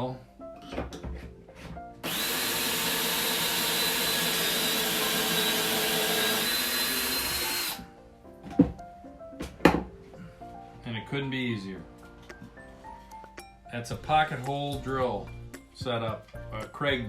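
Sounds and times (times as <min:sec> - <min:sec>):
power drill whining: 0:02.0 - 0:07.9.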